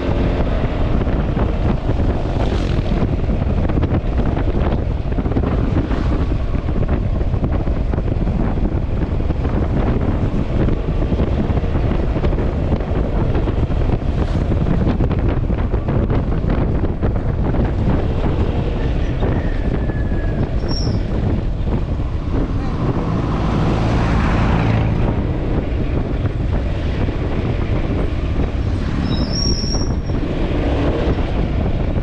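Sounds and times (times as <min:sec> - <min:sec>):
scooter engine and road noise: 0:00.0 - 0:32.0
wind rushing over microphone: 0:00.0 - 0:32.0.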